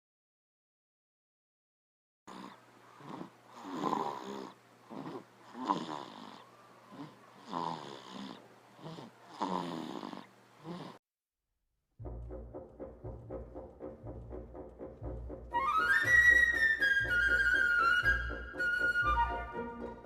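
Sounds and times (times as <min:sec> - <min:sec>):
child snoring: 0:02.3 - 0:11.0
quiet breathing: 0:02.3 - 0:11.0.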